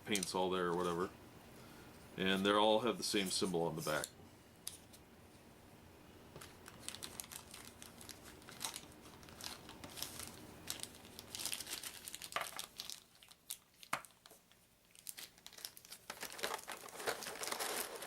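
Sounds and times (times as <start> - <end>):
plastic packaging crinkling: 6.4 - 18.0.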